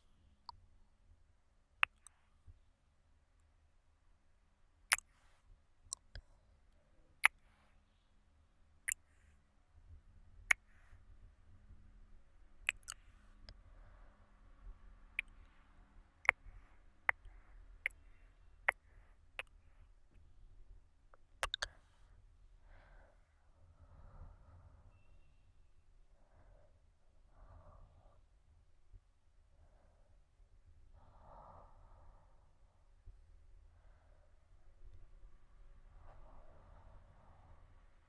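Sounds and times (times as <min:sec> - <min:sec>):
mouth clicks and pops: 0:01.8 - 0:02.2, 0:05.9 - 0:06.2, 0:07.2 - 0:07.4, 0:10.5 - 0:10.8, 0:12.7 - 0:13.1, 0:15.2 - 0:15.5, 0:16.3 - 0:19.5, 0:21.4 - 0:21.8
soft breathing: 0:21.4 - 0:28.3, 0:29.6 - 0:32.9.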